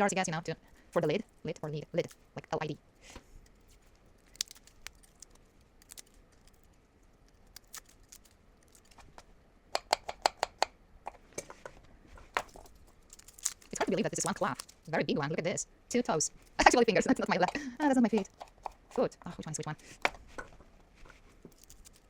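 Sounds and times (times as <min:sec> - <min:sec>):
knife chopping garlic: 0:09.7 - 0:10.7.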